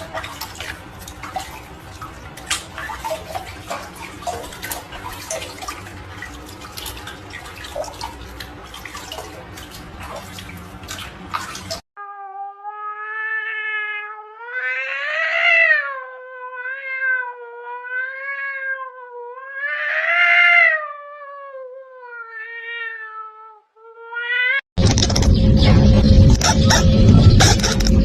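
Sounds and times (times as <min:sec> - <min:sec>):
cat yowling: 0:12.0 - 0:24.6
sudden loud noisy sound: 0:24.8 - 0:28.0.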